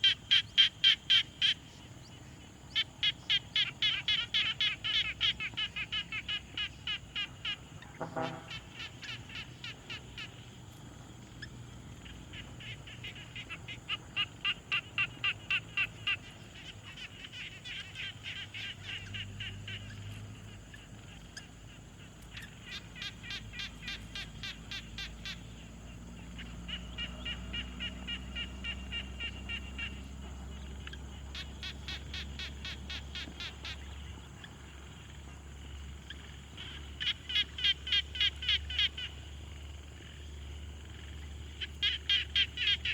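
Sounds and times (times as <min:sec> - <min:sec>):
frogs croaking: 0:00.0 - 0:42.9.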